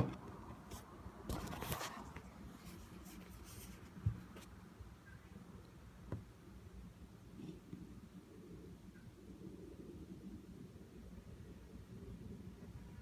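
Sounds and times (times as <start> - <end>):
scratchy rustle of packaging: 0.7 - 4.5.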